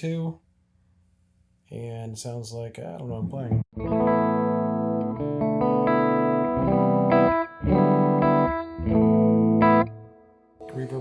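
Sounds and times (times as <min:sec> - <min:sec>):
electric guitar chords: 0:03.2 - 0:11.0.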